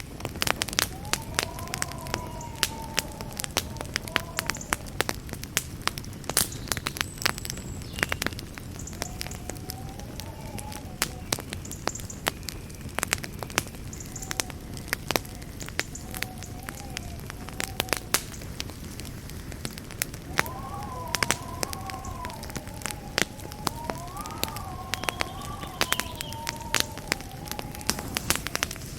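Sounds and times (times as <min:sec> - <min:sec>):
campfire flames rumbling: 0:00.0 - 0:28.9
fire crackling and popping: 0:00.0 - 0:28.9
thin wavering whistle: 0:20.3 - 0:28.9.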